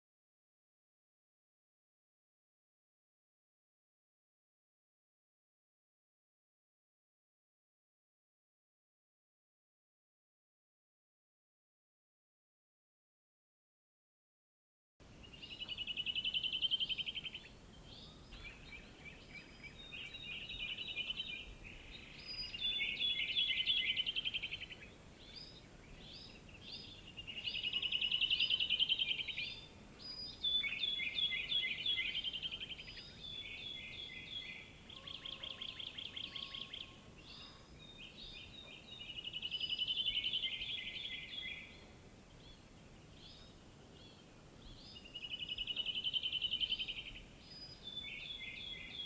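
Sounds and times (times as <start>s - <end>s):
bird chirps: 15.2s - 49.0s
songbirds trilling: 15.2s - 49.0s.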